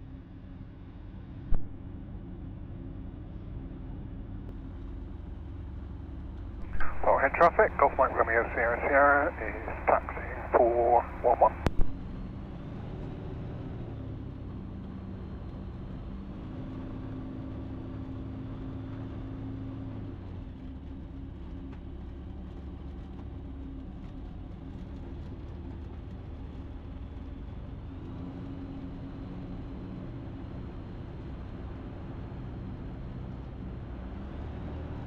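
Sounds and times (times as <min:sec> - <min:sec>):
light aircraft engine and propeller: 0:00.0 - 0:35.0.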